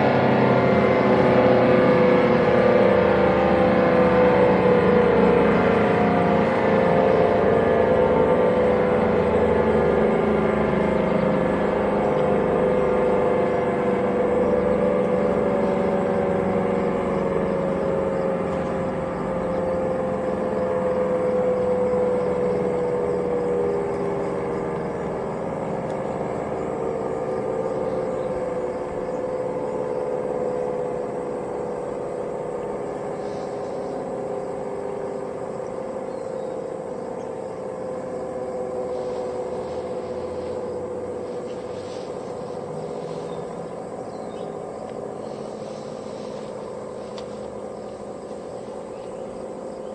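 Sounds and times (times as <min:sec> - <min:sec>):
civil defense sirens winding down: 0:00.0 - 0:49.9.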